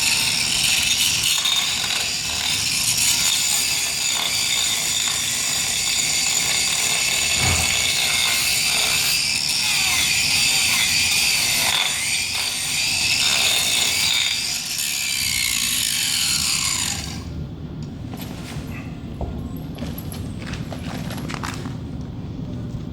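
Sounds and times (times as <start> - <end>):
angle grinder grinding hoof: 0.0 - 17.3.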